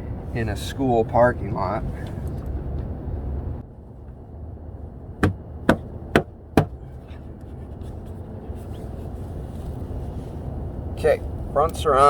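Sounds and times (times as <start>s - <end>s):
sharp knocks: 5.2s - 6.8s.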